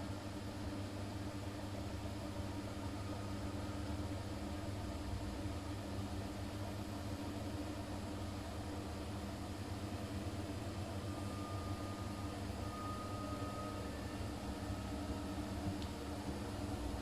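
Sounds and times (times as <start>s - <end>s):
washing machine hum: 0.0s - 17.0s
faint whine: 10.4s - 17.0s.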